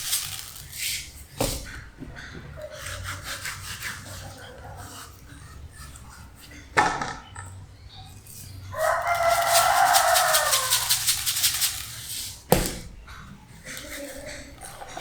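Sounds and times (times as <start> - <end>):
rooster crowing: 8.6 - 11.8.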